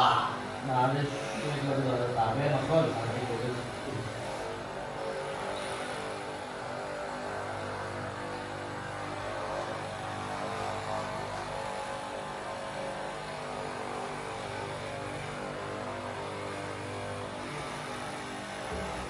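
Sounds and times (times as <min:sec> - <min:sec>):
steady machine hum: 0:00.0 - 0:05.8.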